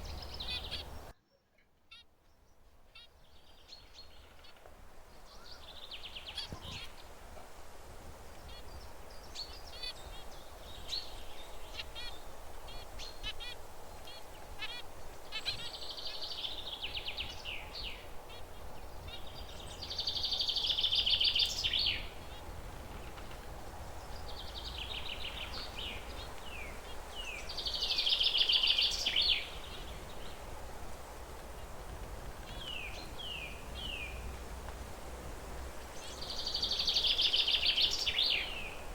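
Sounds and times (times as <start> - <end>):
finches chirping and singing: 0.0 - 1.0, 15.4 - 22.4, 24.0 - 30.4, 36.0 - 38.8.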